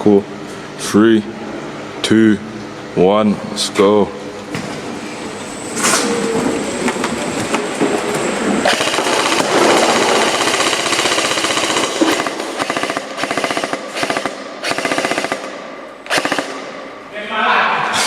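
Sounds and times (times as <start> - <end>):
electric bb guns firing: 8.6 - 17.0.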